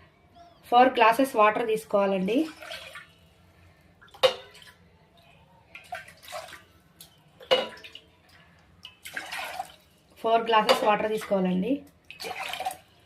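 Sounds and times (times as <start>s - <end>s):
water splashing into a pot: 2.4s - 3.3s, 3.9s - 13.0s.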